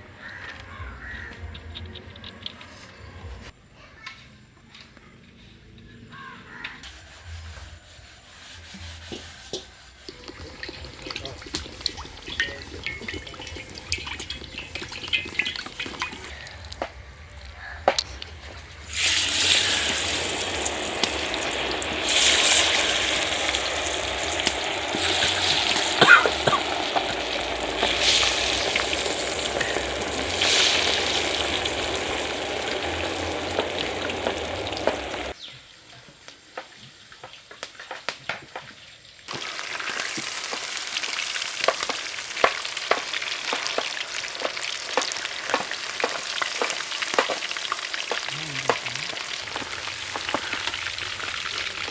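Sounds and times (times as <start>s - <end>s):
food sizzling in hot oil: 8.4s - 16.9s, 17.6s - 35.4s, 39.3s - 51.9s
oil ticking and popping: 10.1s - 35.4s, 39.3s - 51.9s.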